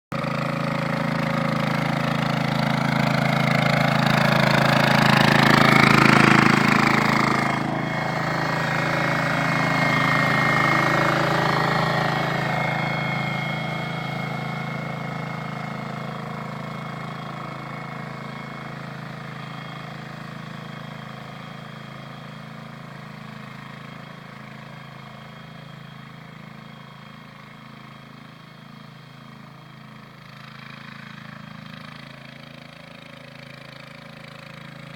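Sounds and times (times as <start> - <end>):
rotary tiller engine running: 0.1 - 34.9.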